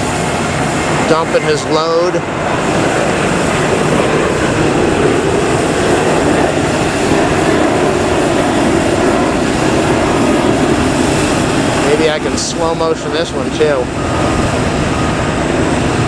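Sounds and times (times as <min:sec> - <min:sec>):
jet airliner engines roaring: 0:00.0 - 0:16.0.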